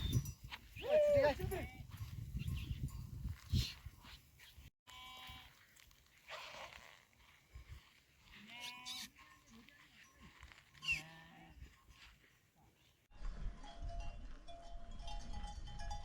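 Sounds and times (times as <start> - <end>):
faint animal bleating: 4.9 - 5.6, 8.3 - 9.7, 10.8 - 11.6.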